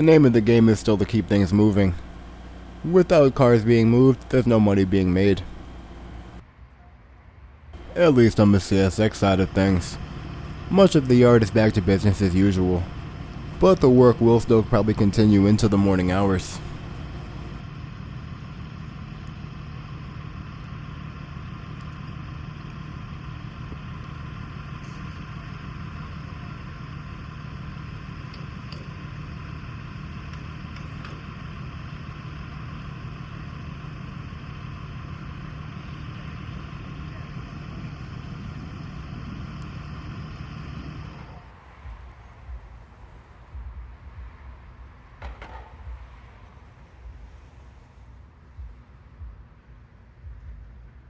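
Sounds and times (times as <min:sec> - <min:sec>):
diesel locomotive engine idling: 0:00.0 - 0:06.4, 0:07.8 - 0:17.6.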